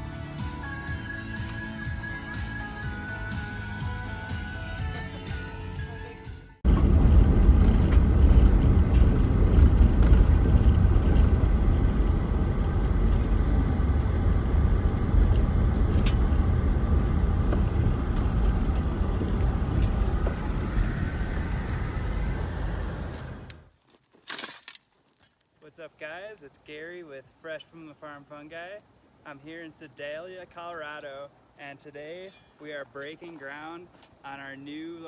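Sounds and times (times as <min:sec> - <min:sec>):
car road and engine rumble: 0:06.6 - 0:23.7.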